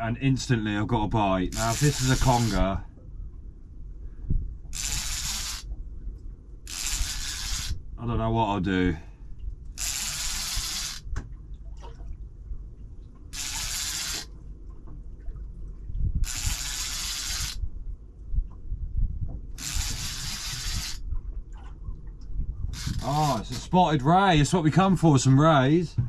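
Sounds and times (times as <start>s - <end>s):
fishing reel winding: 1.5s - 2.6s, 4.7s - 5.7s, 6.7s - 7.8s, 9.8s - 11.1s, 13.3s - 14.3s, 16.2s - 17.6s, 19.6s - 21.0s, 22.7s - 23.5s
low rumble: 17.6s - 20.3s, 21.0s - 26.0s.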